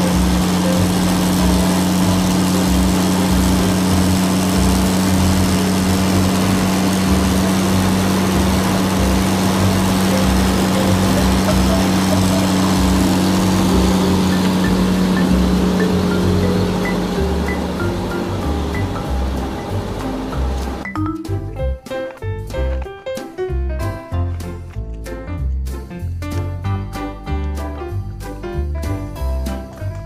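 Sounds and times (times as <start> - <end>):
engine running steadily: 0.0 - 21.8.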